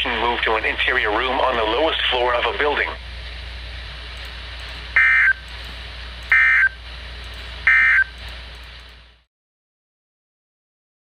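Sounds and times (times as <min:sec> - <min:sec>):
radio hiss: 0:00.0 - 0:03.1, 0:04.0 - 0:08.2
screeching digital data tone: 0:05.0 - 0:05.4, 0:06.3 - 0:06.8, 0:07.7 - 0:08.2.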